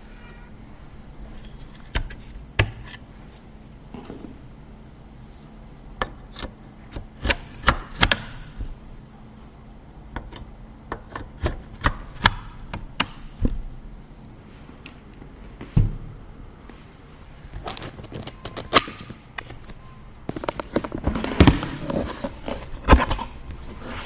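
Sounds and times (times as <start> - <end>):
hard parts clicking and tapping: 17.6 - 23.3.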